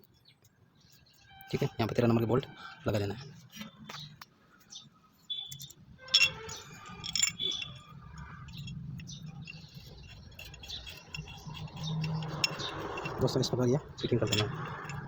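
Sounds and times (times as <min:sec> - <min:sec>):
metal clinks of bolts and spanner: 0:05.3 - 0:15.0.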